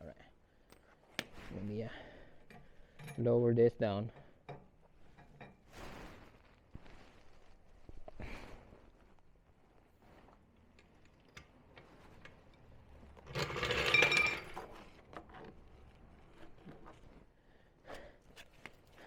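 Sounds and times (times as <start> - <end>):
soft rustle: 4.8 - 13.2, 14.7 - 19.0
rapid mechanical clattering of tool: 13.3 - 14.6.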